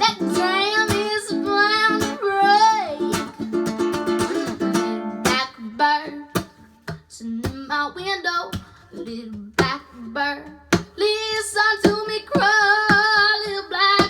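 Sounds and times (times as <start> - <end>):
strummed ukulele: 0.0 - 7.8
girl singing with vibrato: 0.0 - 14.0.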